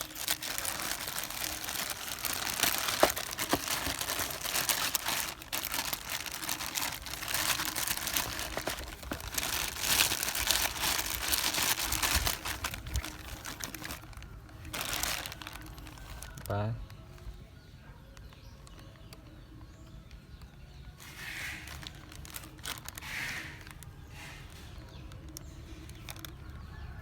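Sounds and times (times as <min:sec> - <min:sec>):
crinkling rustling: 0:00.0 - 0:17.5, 0:21.0 - 0:27.0.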